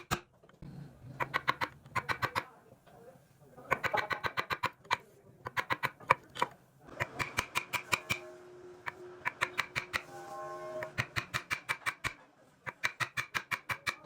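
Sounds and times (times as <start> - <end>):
sharp taps on wood: 3.7 - 8.2, 9.3 - 10.1, 10.9 - 14.0.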